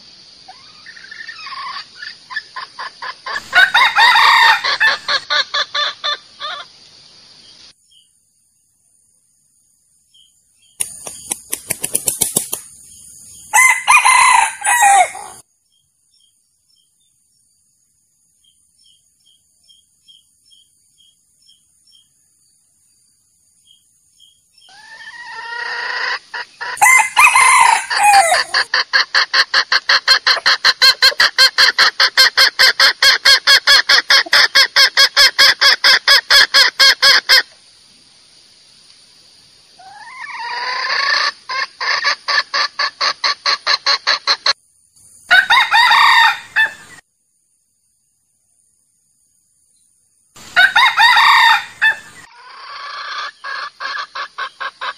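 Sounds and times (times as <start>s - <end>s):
rooster crowing: 3.4s - 5.2s, 13.5s - 15.4s, 26.8s - 28.7s, 45.3s - 46.8s, 50.6s - 53.0s
rapid clucking: 10.8s - 12.8s, 28.4s - 37.4s.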